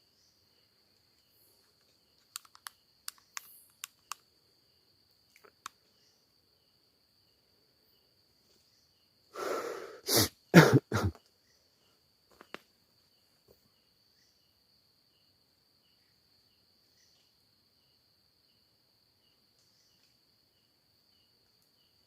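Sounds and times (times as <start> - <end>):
high insect trill: 0.0 - 22.0
breathy rush: 9.3 - 10.8
person coughing: 10.1 - 11.2.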